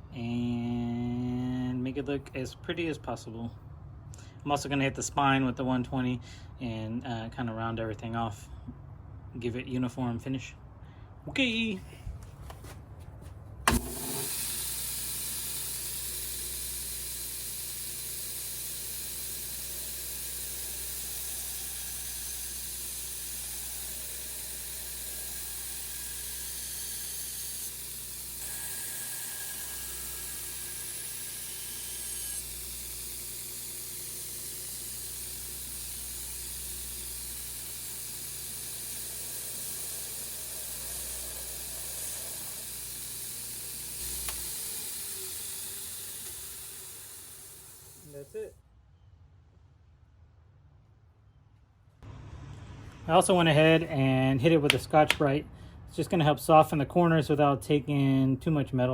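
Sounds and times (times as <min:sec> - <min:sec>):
belt grinder grinding steel: 0:13.7 - 0:48.5.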